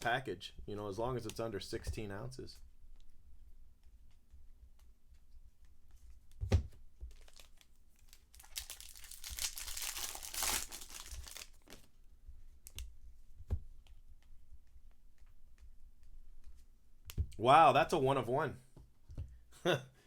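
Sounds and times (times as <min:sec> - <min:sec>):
foil wrapper tearing and crinkling: 0:07.1 - 0:11.9.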